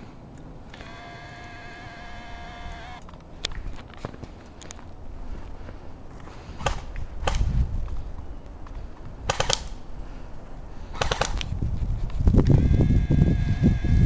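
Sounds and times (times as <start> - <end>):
airsoft gun shots: 6.6 - 7.5, 9.3 - 9.8, 11.0 - 11.4.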